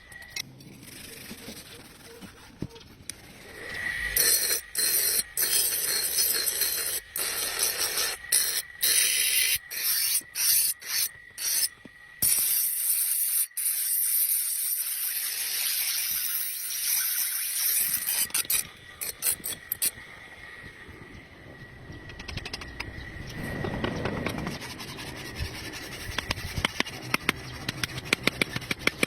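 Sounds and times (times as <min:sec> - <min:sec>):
blade being sharpened: 0:04.1 - 0:19.9.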